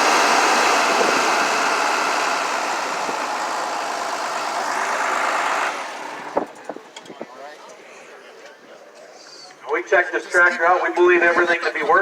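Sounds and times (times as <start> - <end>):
tractor engine running: 0.0 - 7.0.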